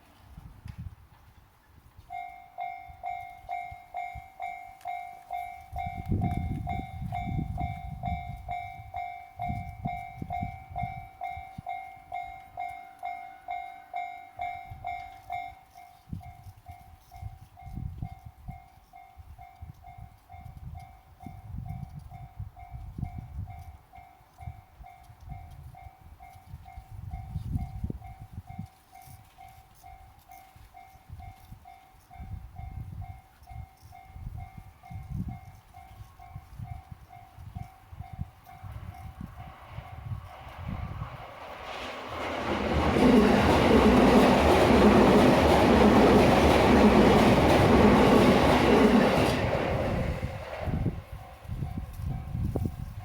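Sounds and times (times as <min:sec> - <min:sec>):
train wheels rumbling: 0:37.4 - 0:53.0.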